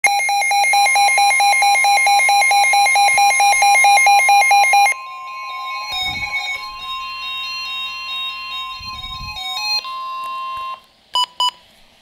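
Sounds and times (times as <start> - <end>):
steady high tone: 2.2 - 10.8.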